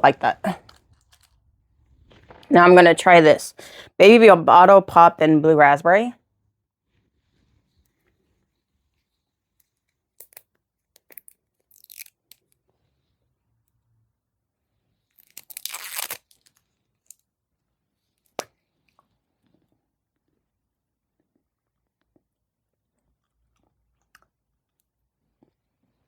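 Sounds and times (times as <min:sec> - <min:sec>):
plastic packaging tearing: 0:00.5 - 0:01.4, 0:11.0 - 0:12.4, 0:15.2 - 0:16.6.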